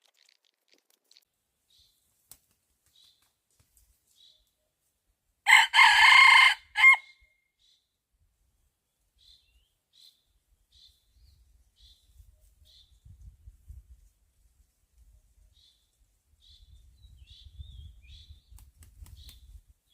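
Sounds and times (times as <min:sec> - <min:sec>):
rooster crowing: 0:05.5 - 0:07.1.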